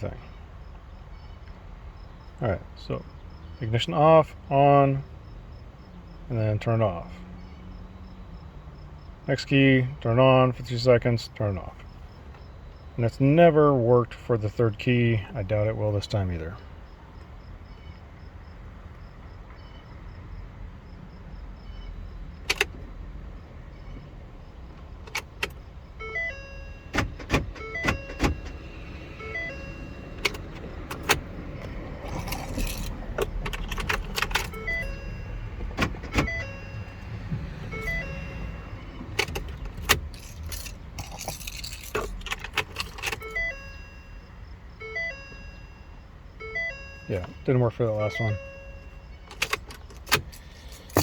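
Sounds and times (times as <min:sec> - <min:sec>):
key clicking in ignition: 0:22.4 - 0:22.9, 0:24.7 - 0:43.8, 0:48.0 - 0:51.0
keys jangling: 0:30.2 - 0:34.9, 0:39.1 - 0:43.4, 0:49.3 - 0:51.0.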